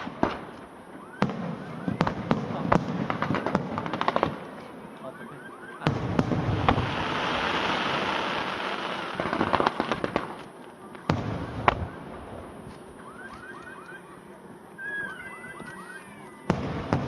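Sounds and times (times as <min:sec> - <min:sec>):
firework bangs: 0:00.0 - 0:04.8, 0:05.8 - 0:13.5, 0:16.3 - 0:17.0
fireworks hissing and crackling: 0:00.0 - 0:17.0.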